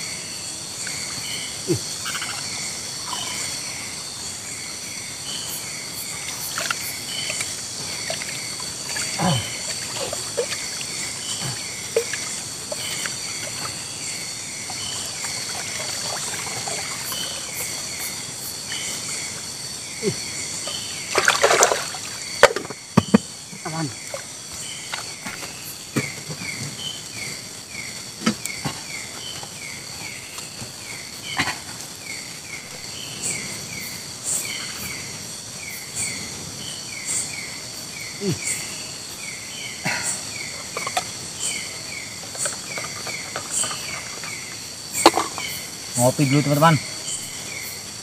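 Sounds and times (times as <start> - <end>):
high insect drone: 0.0 - 48.0
water splashing and dribbling: 1.7 - 3.6, 6.0 - 19.4, 20.6 - 26.2, 40.4 - 45.6.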